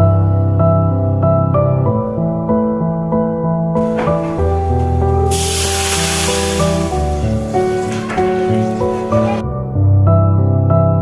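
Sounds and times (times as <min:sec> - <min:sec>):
steady hiss: 0:03.8 - 0:08.8.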